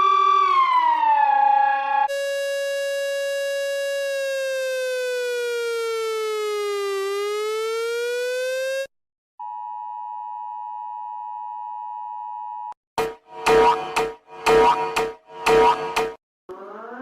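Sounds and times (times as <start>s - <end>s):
electronic siren tone: 0.0s - 8.9s, 13.0s - 17.0s
steady electronic attention tone: 13.0s - 16.2s.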